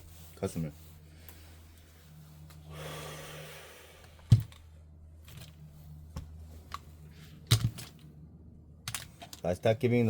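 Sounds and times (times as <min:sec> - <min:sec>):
steady low hum: 0:00.0 - 0:10.0
small hard parts clicking: 0:08.8 - 0:09.5.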